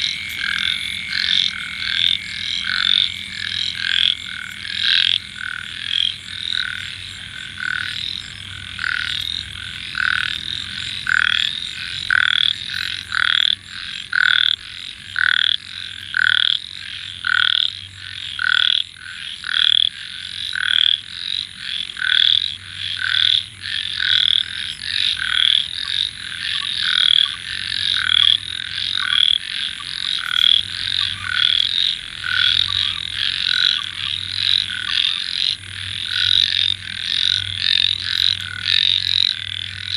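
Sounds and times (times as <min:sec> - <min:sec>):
chorus of frogs croaking: 0:00.0 - 0:39.9.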